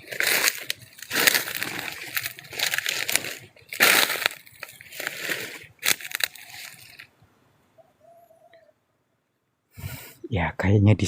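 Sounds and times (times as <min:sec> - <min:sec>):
footsteps crunching through dry leaves: 0:00.0 - 0:07.1.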